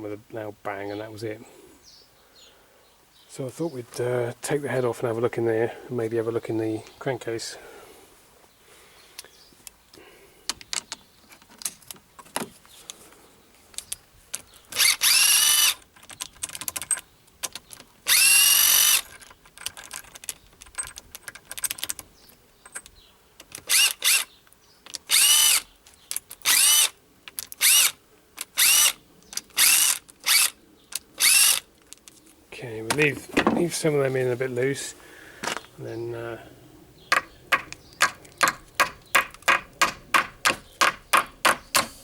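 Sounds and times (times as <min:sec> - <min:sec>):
cordless driver motor whining: 0:14.7 - 0:15.8, 0:18.1 - 0:19.0, 0:23.6 - 0:24.3, 0:25.1 - 0:25.6, 0:26.4 - 0:27.0, 0:27.6 - 0:28.0, 0:28.6 - 0:29.0, 0:29.6 - 0:30.6, 0:31.2 - 0:31.6.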